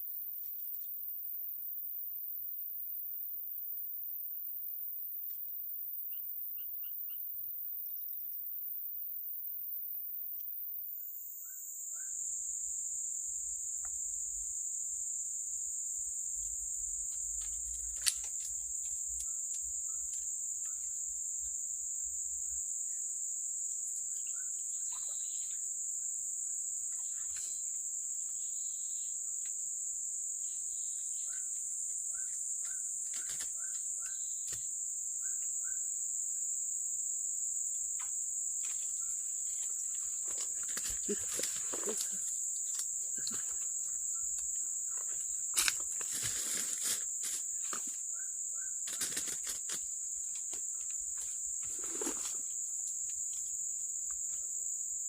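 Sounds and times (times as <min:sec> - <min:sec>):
insects trilling: 0:00.0 - 0:55.0
louder lower insect trill: 0:00.0 - 0:55.0.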